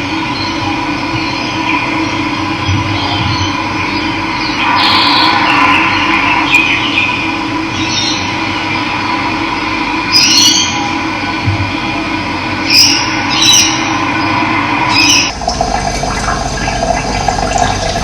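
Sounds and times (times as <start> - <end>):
birds chirping: 1.2 - 9.0, 12.6 - 15.4.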